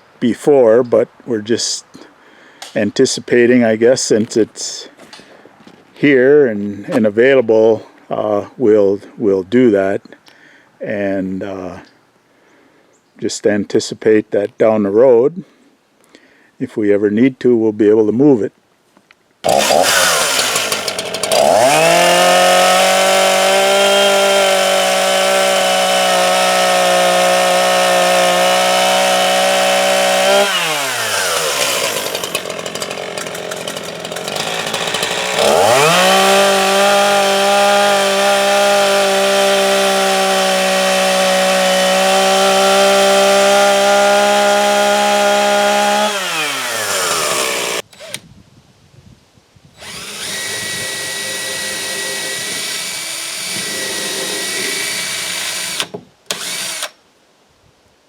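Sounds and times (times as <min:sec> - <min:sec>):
chainsaw idling: 0:19.4 - 0:48.2, 0:49.8 - 0:56.9
chainsaw cutting wood: 0:19.4 - 0:48.3, 0:49.8 - 0:57.0.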